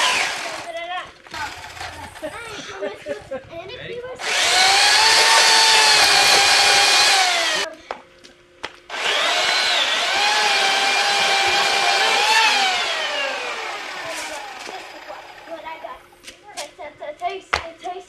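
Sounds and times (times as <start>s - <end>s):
power saw cutting wood: 0.0s - 0.7s, 1.3s - 2.8s, 4.2s - 7.7s, 8.9s - 15.8s.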